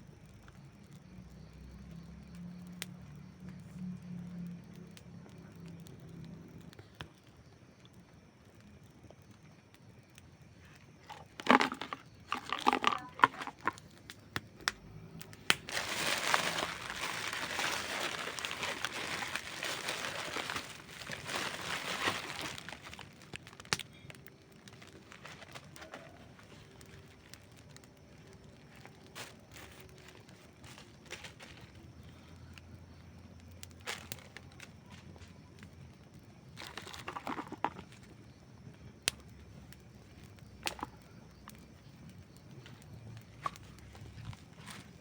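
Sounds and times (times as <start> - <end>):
campfire crackling: 0.0 - 45.0
fire hissing: 4.8 - 45.0
sharp pops of fire: 13.7 - 15.9, 22.6 - 29.5.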